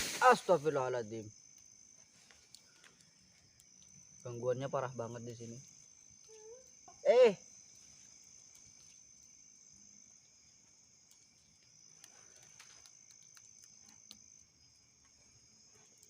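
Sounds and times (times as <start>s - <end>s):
insects chirring: 0.0s - 16.0s
faint ticks: 1.4s - 4.4s, 7.8s - 9.4s, 11.0s - 16.0s.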